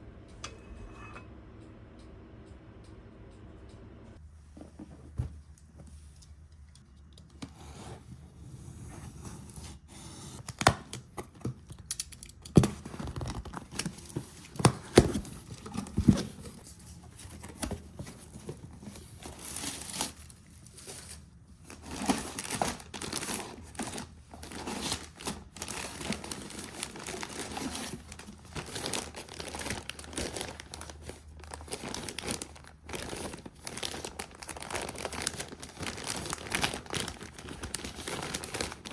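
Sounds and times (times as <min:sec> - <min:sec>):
packaging tearing and crinkling: 0:19.3 - 0:21.1, 0:21.7 - 0:38.9.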